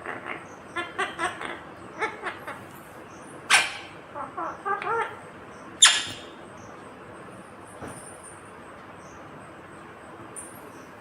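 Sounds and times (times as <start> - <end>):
parakeet chattering chirps: 0.0 - 6.7
parakeet harsh screeches: 5.8 - 6.3.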